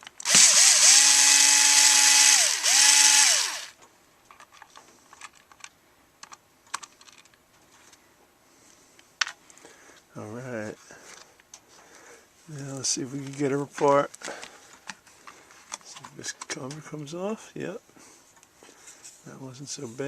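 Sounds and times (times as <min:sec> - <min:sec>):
power screwdriver motor spinning: 0:00.0 - 0:03.7.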